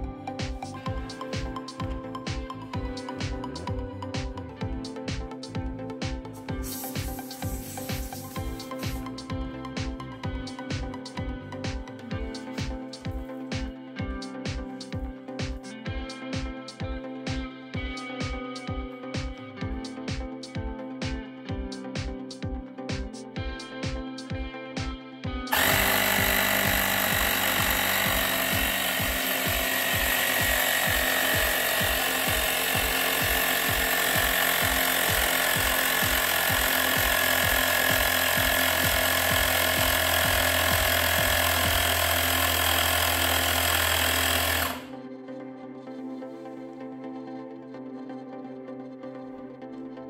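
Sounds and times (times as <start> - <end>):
background music: 0.0 - 50.0
tyre compressor buzzing: 6.5 - 9.2, 25.5 - 44.9.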